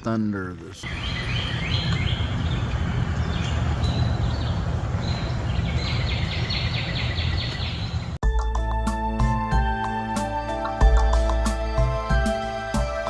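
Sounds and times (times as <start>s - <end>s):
bird chirping: 0.8s - 8.2s
music: 8.2s - 13.0s.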